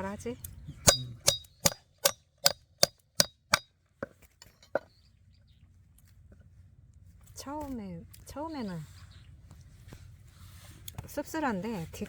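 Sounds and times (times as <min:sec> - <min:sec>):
knife knocking through root: 0:00.9 - 0:03.6.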